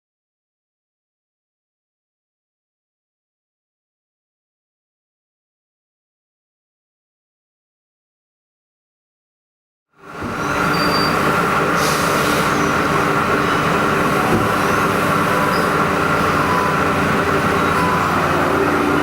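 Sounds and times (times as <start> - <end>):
milling machine humming: 12.4 - 19.0.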